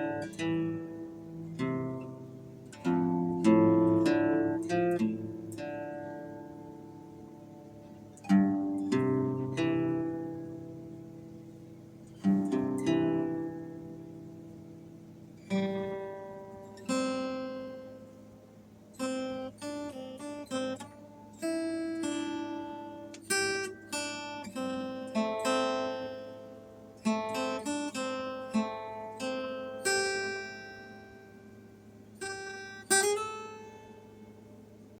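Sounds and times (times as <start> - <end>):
solo acoustic guitar: 0.0 - 35.0.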